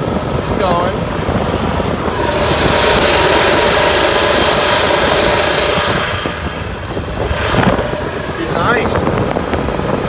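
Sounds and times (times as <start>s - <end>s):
golf cart engine running: 0.0s - 10.0s.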